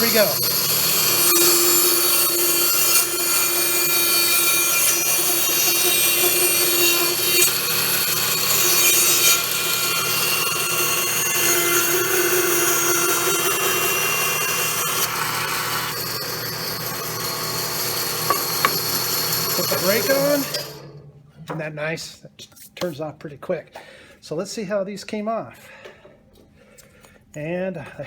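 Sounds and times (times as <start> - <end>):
bandsaw running: 0.0 - 21.0
saw cutting through wood: 0.0 - 21.0.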